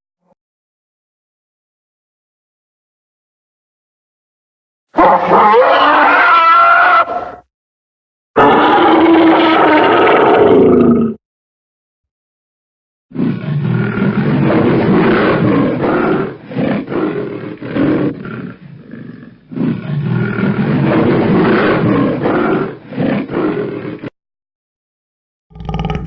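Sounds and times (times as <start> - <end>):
monster roaring: 5.0 - 7.4, 8.4 - 11.2, 13.1 - 24.1, 25.5 - 26.0.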